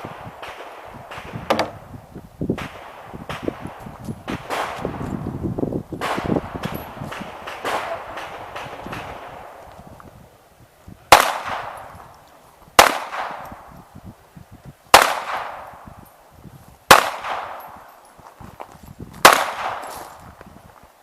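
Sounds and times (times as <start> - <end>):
pistol shots with echo: 0.0 - 1.9, 2.6 - 5.2, 6.0 - 9.6, 11.1 - 12.0, 12.8 - 13.8, 14.9 - 16.0, 16.9 - 17.9, 19.2 - 20.0.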